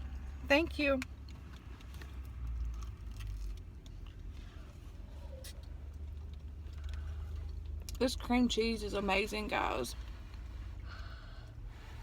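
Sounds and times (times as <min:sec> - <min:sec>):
faint clicks and rustles: 0:00.0 - 0:08.0.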